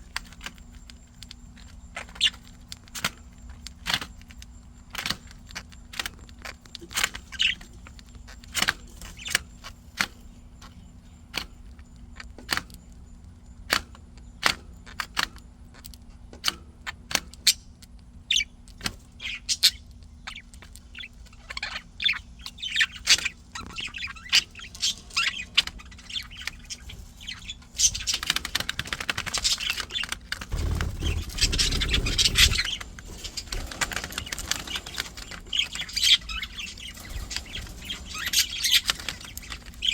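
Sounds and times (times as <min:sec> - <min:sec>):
budgerigars chirping: 0:19.2 - 0:28.5, 0:29.4 - 0:39.9.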